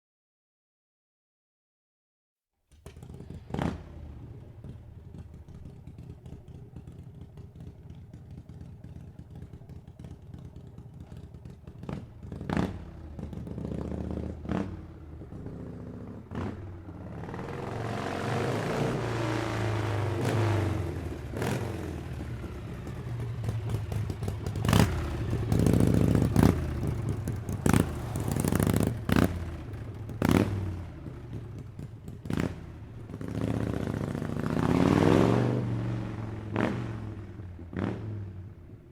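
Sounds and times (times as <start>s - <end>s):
motorcycle engine idling and revving: 2.7s - 38.9s.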